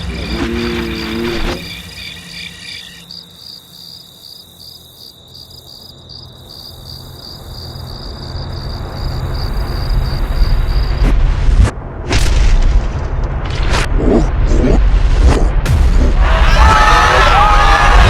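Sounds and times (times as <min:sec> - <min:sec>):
crickets chirping: 0:00.0 - 0:11.1
low rumble: 0:10.4 - 0:18.0.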